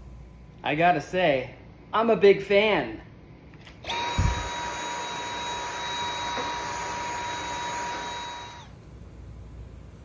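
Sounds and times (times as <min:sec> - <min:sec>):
cordless vacuum whine: 0:03.6 - 0:08.8.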